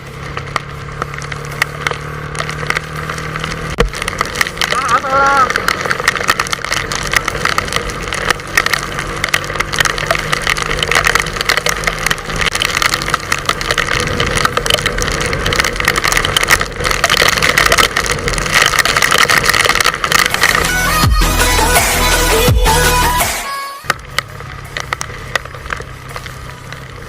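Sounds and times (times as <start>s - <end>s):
motorcycle engine running: 0.0s - 27.0s
rough rushing noise: 0.0s - 27.0s.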